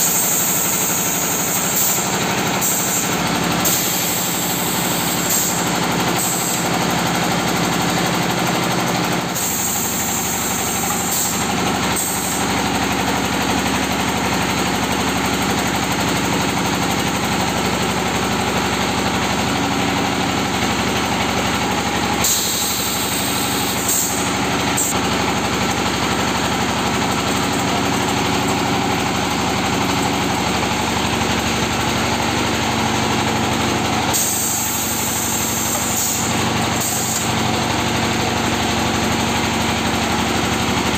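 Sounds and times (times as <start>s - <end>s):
machine hiss: 0.0s - 7.0s, 9.2s - 12.6s, 22.2s - 25.0s, 33.9s - 37.9s
press machine drone: 0.0s - 40.9s.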